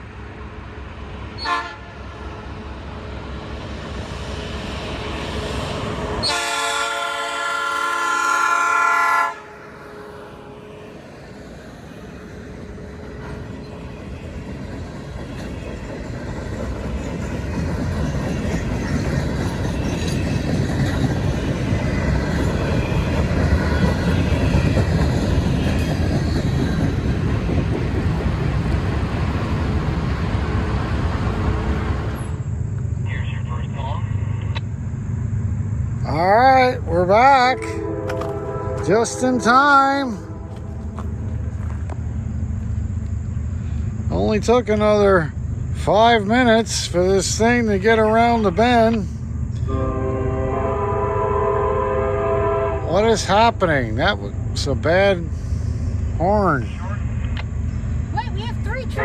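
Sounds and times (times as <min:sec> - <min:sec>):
train rumble and wheel noise: 0:00.0 - 0:59.0
locomotive air horn chord: 0:01.4 - 0:02.0, 0:06.2 - 0:10.9, 0:37.6 - 0:41.0, 0:49.6 - 0:53.0.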